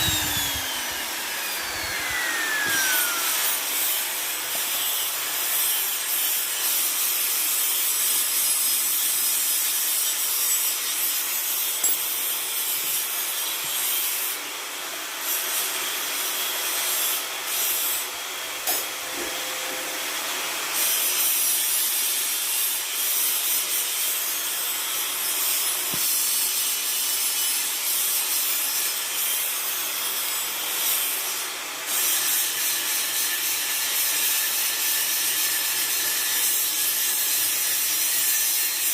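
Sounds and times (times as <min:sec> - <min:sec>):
angle grinder rasping: 0:00.0 - 0:14.0.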